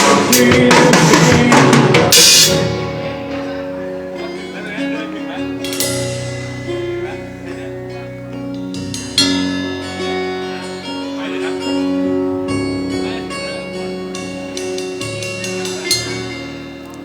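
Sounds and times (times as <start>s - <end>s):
sharp drum hit: 0.0s - 3.0s
live band playing: 0.0s - 17.0s.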